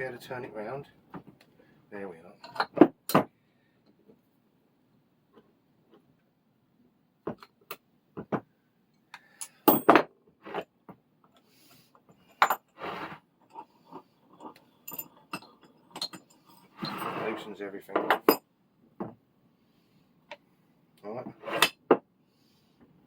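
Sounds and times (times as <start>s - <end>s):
metal vise parts clinking: 13.5s - 18.4s.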